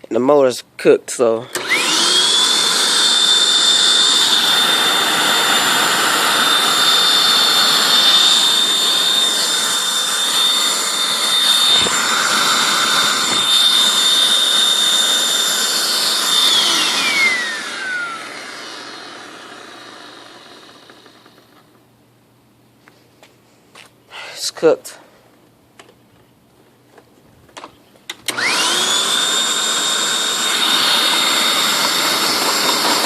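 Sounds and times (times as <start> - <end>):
vacuum cleaner whining: 1.4 - 21.8, 28.2 - 33.0.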